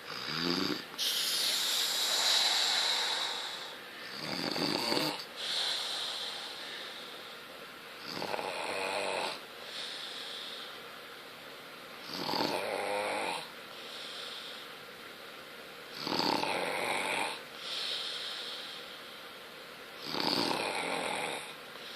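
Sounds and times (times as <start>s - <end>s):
long fluttering snores: 0.0s - 7.2s, 8.0s - 10.7s, 12.0s - 14.6s, 15.9s - 18.7s, 20.0s - 21.6s
soft hissing breath: 0.0s - 21.9s.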